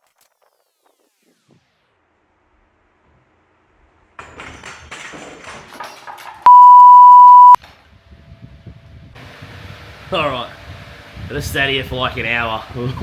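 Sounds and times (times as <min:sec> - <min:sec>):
censor bleep: 0:06.5 - 0:07.6.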